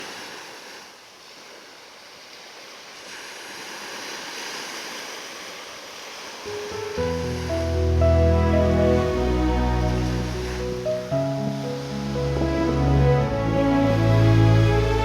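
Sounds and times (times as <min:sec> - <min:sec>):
ocean waves breaking on beach: 0:00.0 - 0:15.0.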